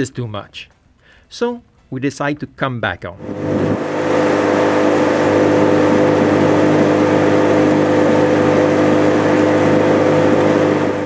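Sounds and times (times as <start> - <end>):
vehicle engine droning: 3.2 - 11.0.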